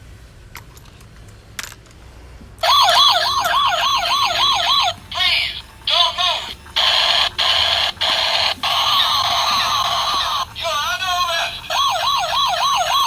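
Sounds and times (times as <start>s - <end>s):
toy electronic siren wailing: 2.6s - 13.0s.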